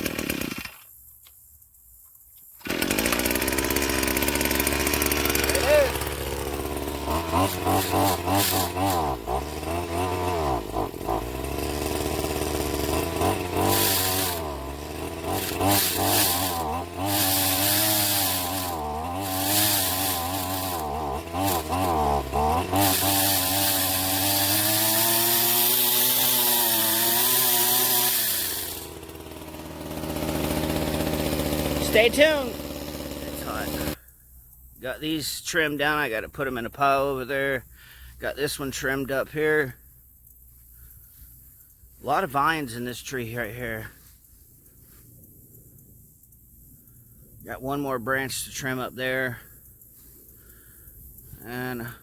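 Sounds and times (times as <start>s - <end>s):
weed eater engine revving: 0.0s - 0.9s, 2.6s - 34.1s, 40.7s - 44.2s, 47.4s - 52.0s
saw cutting branches: 0.0s - 1.4s, 2.4s - 34.1s.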